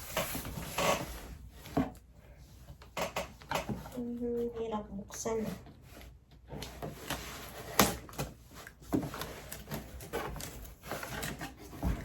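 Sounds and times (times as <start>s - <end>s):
cardboard box rustling: 6.7s - 12.0s.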